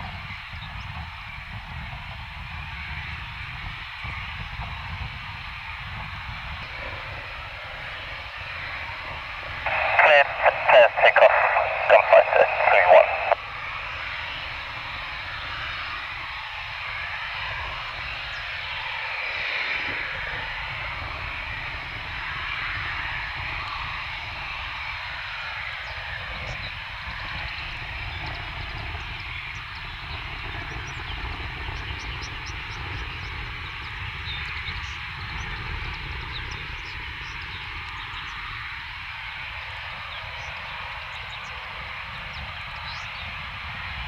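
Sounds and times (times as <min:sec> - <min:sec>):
jet engine rumble: 0:02.7 - 0:22.3.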